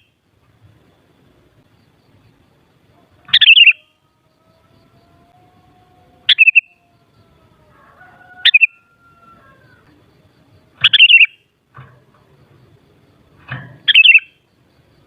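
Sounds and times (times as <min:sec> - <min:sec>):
bird singing bubbly chirps: 0:03.3 - 0:04.0, 0:06.3 - 0:07.1, 0:10.7 - 0:11.4, 0:13.9 - 0:14.4.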